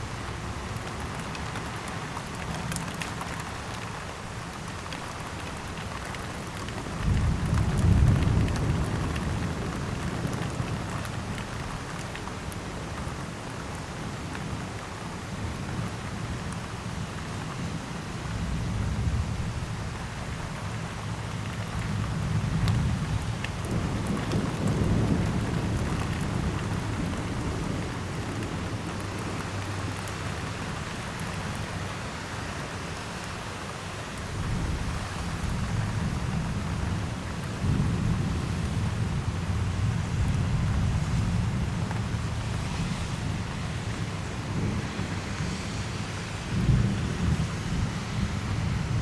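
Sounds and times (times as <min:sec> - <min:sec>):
heavy rain falling: 0:00.0 - 0:49.0
raindrops hitting close by: 0:00.0 - 0:49.0
low thunder rumble: 0:06.8 - 0:11.8, 0:18.3 - 0:30.8, 0:34.3 - 0:49.0.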